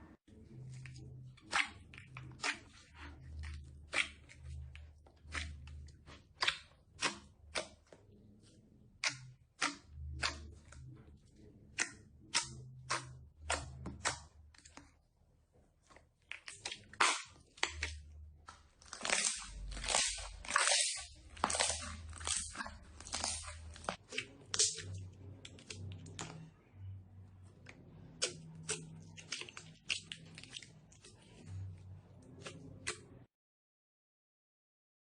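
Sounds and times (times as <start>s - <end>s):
slime crackling and popping: 16.3s - 18.1s, 18.8s - 26.4s.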